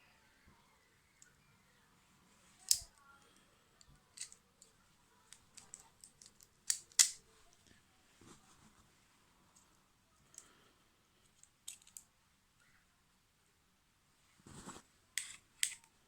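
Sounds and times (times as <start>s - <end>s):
metal tool clicking: 2.6s - 2.9s, 5.6s - 7.2s, 15.2s - 15.9s.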